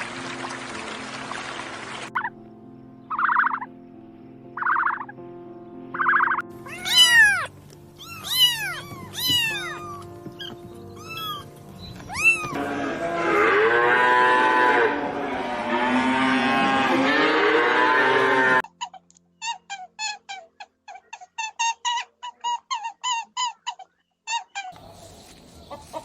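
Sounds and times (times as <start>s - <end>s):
cats meowing: 6.2s - 12.7s.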